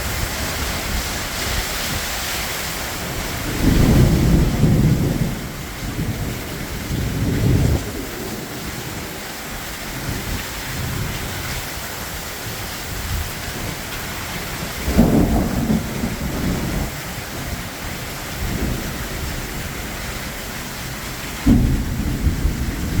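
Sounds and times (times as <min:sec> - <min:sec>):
heavy rain pouring: 0:00.0 - 0:23.0
thunder rumbles: 0:02.9 - 0:11.6, 0:12.6 - 0:23.0.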